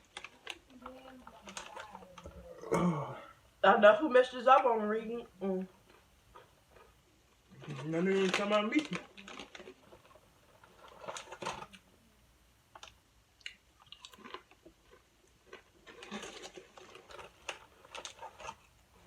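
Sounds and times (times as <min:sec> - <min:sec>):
chewing and crunching: 0:12.8 - 0:19.0.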